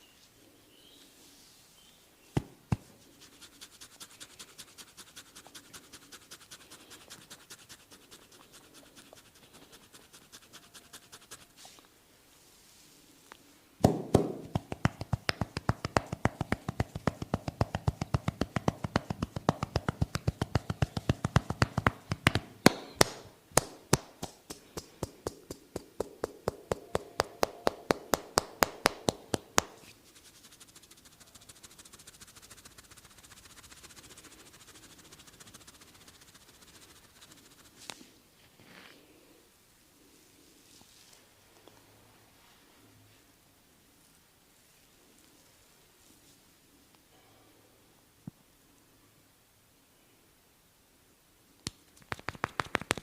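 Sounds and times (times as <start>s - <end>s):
hands tapping on a person: 2.4s - 2.9s, 13.8s - 29.8s, 51.7s - 53.0s
sharp hand smacks: 13.8s - 29.8s, 51.6s - 53.0s.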